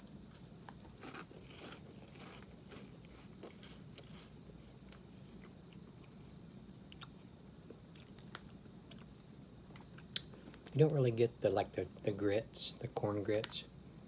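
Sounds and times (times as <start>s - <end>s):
chewing crunchy snacks: 0.0s - 6.2s, 7.9s - 10.8s
low steady hum: 0.0s - 14.0s.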